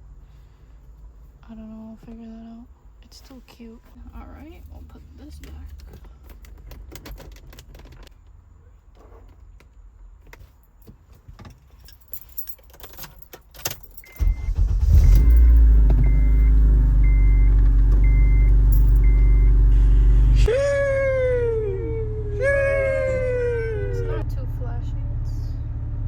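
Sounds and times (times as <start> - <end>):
car engine starting and running: 3.8 - 9.4, 12.4 - 26.0
small clicks and rattles: 5.3 - 8.4
keys jangling: 5.7 - 8.1, 10.5 - 14.2, 18.6 - 19.2
car chime beeping: 13.8 - 20.4.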